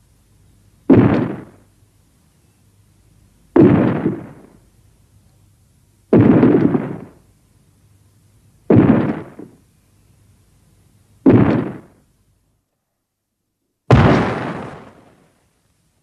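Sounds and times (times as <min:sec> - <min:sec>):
heavy booming crashes: 0:13.9 - 0:15.3.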